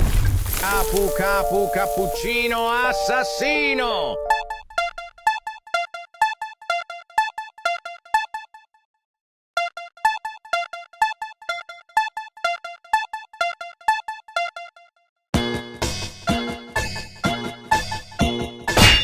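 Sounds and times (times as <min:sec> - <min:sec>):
electronic keyboard chimes: 0:00.6 - 0:05.0.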